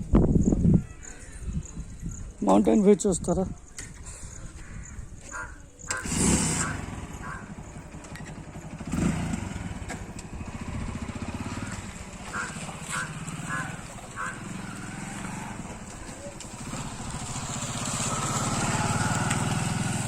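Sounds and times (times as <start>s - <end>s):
vehicle engine running: 6.0s - 20.0s.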